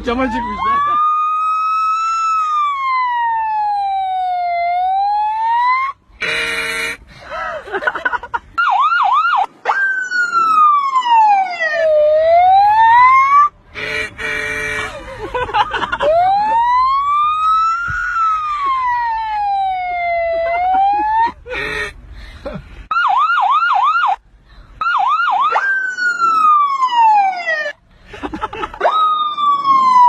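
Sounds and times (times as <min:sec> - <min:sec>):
electronic siren wailing and yelping: 0:00.0 - 0:06.0, 0:08.6 - 0:13.6, 0:16.0 - 0:21.4, 0:22.9 - 0:24.2, 0:24.8 - 0:27.8, 0:28.8 - 0:30.0.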